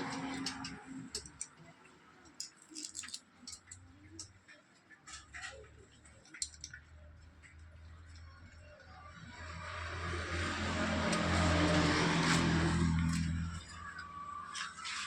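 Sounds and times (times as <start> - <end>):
tools and metal parts clinking: 2.2 - 4.3.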